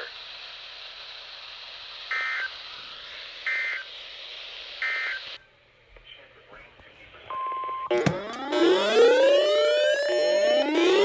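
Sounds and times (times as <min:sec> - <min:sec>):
radio receiver hiss: 0:00.0 - 0:05.4.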